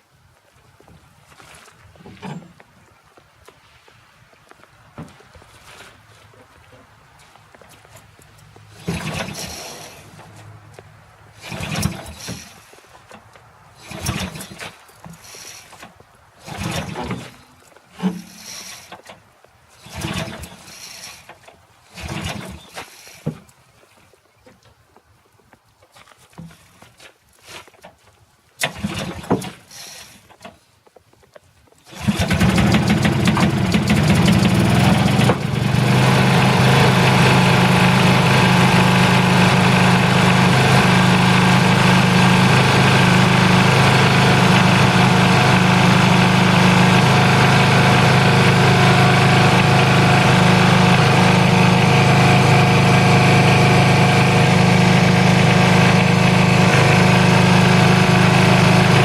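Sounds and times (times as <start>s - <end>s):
mower engine starting and running: 8.6s - 10.6s, 11.3s - 19.2s, 19.8s - 23.4s, 28.6s - 30.2s, 31.9s - 59.0s.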